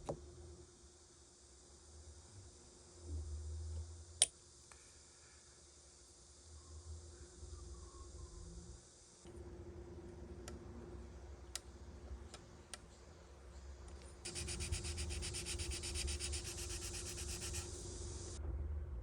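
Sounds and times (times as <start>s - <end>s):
faint steady hum: 0.0s - 19.0s
sanding plastic part: 14.3s - 17.8s.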